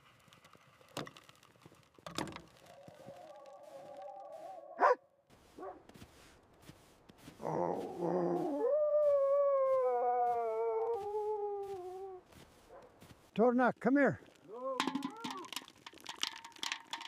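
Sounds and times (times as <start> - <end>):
dog howling: 2.8 - 5.0, 7.4 - 12.2.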